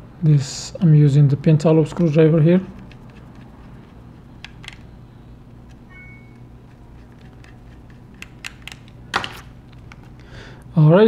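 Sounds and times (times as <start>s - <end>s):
steady low hum: 0.0s - 11.0s
brief high tone: 5.9s - 6.4s.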